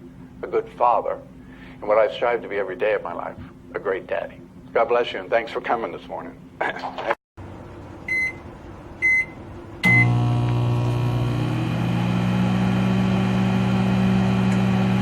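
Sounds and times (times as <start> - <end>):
microwave running hum: 6.3 - 15.0
microwave keypad beeps: 8.1 - 8.4, 9.0 - 10.2.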